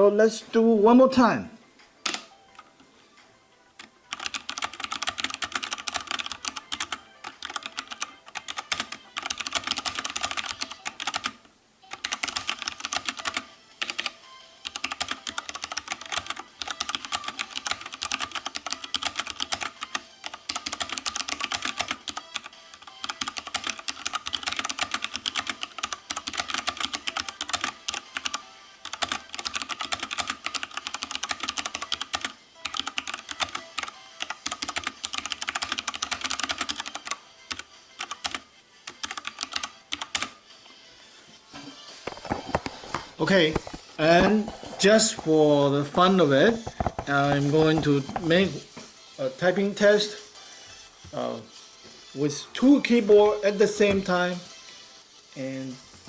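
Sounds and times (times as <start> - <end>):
mechanical keyboard typing: 2.0 - 2.3, 3.8 - 40.4.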